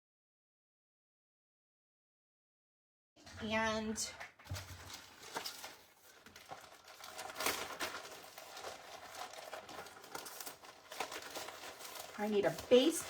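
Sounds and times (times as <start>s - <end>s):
paper rustling: 4.4s - 13.0s.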